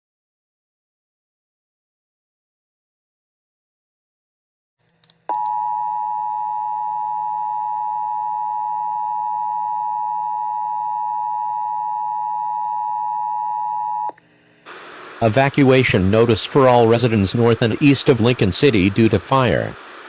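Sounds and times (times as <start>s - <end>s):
click: 4.8s - 5.6s.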